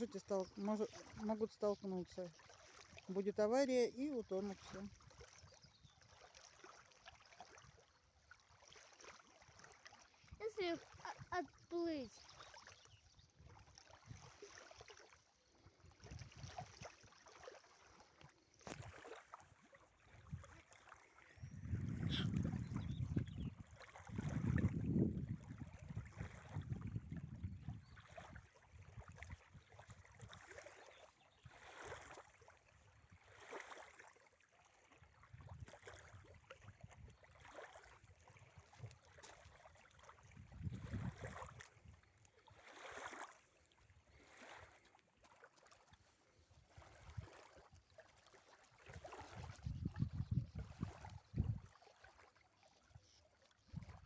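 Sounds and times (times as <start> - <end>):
water lapping against hull: 0.0 - 54.0
wind rumbling on microphone: 15.9 - 16.9, 21.3 - 30.4, 40.2 - 42.0, 46.7 - 47.4, 48.9 - 51.8, 53.7 - 54.0.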